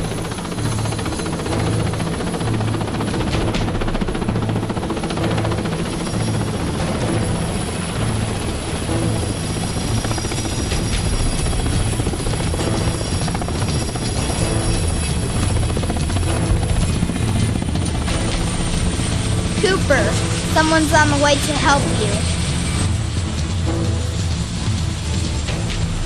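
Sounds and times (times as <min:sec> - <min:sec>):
helicopter rotor chop: 0:00.0 - 0:26.0.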